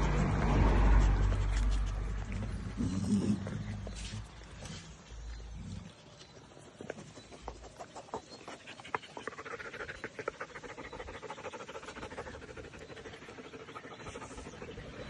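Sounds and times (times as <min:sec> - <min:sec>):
dog panting fast: 0:07.2 - 0:15.0.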